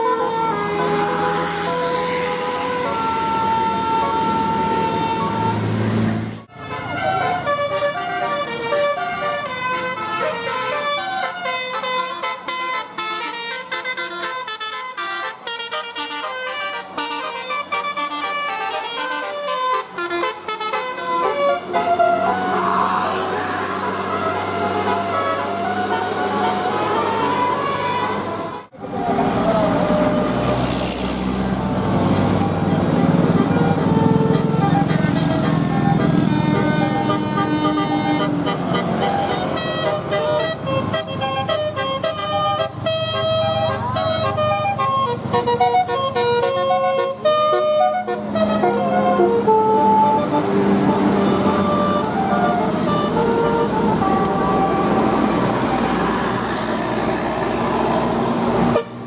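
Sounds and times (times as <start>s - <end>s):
bus musical horn tune: 0.0s - 59.0s
low engine rumble: 16.9s - 58.7s.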